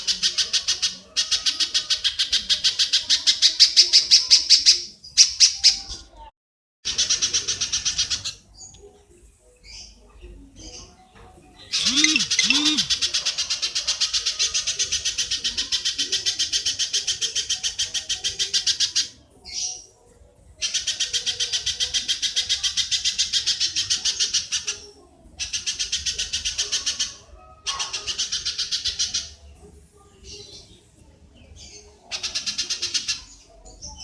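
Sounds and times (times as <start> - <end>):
rattling animal chatter: 11.7 - 19.0.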